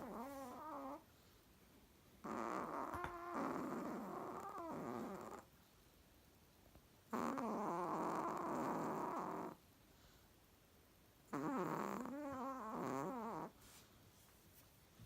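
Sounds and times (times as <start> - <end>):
dog snoring: 0.0 - 1.1, 2.2 - 5.5, 7.1 - 9.6, 11.3 - 13.6.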